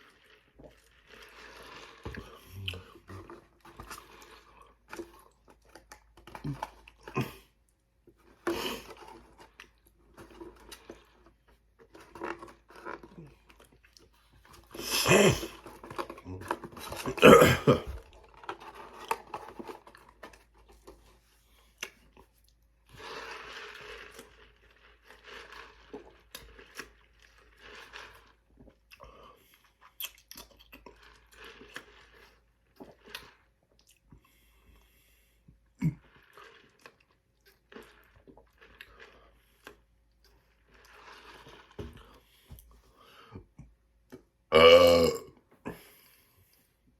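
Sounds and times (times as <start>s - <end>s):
man chewing and mouth sounds: 0.0s - 46.9s
loud burp: 14.8s - 15.6s, 17.0s - 18.0s, 44.5s - 45.8s.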